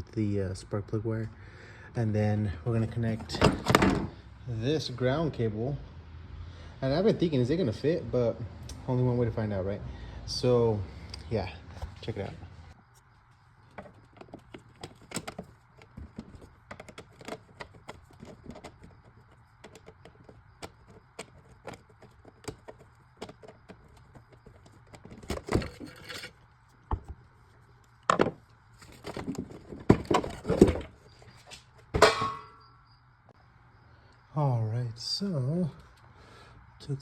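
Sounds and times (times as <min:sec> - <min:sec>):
metal knocks and clanks: 0:31.8 - 0:32.7.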